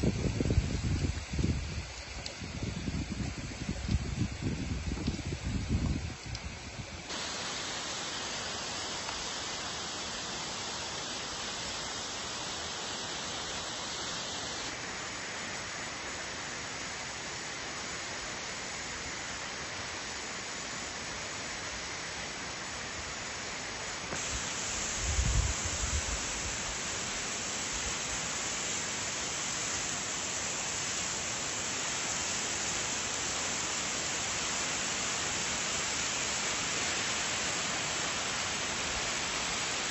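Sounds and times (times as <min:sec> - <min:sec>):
waterfall rushing: 0:07.1 - 0:19.9, 0:23.6 - 0:39.9.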